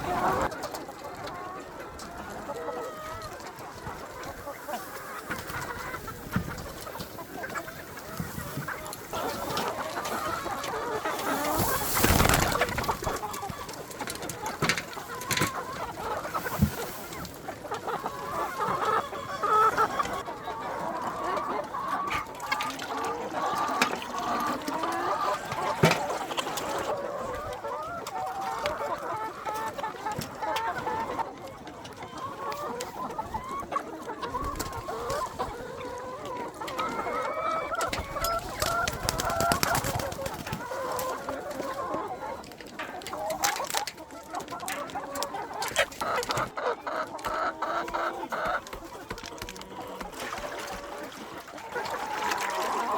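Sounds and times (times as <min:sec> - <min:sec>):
chickens clucking: 0:00.0 - 0:52.9.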